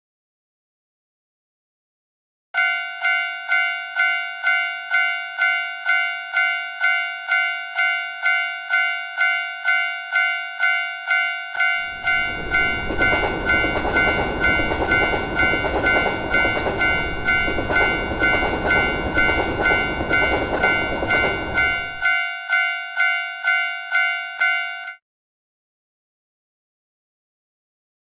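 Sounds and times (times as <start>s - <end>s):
railway crossing bell ringing: 2.6s - 25.0s
train passing with rumbling clatter: 11.8s - 22.1s.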